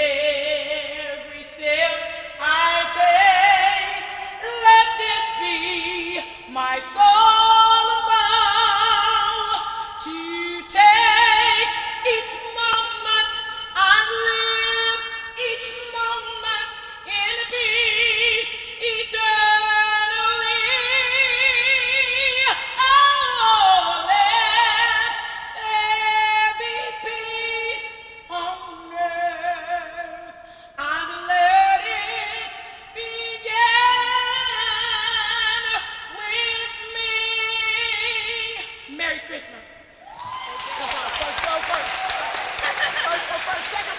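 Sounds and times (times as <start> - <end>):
choir singing with vibrato: 0.0 - 21.6.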